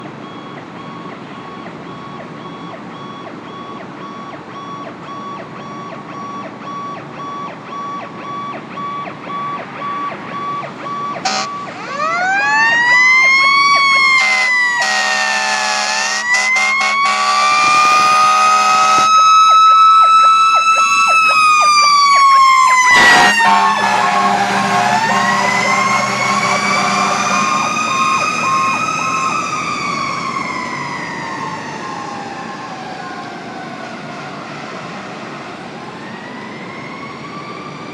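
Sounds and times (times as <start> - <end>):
siren wailing: 0.0 - 37.9
horn blasts: 11.2 - 11.6, 14.1 - 19.2, 22.9 - 27.8
pulsing warning tone: 14.2 - 29.3.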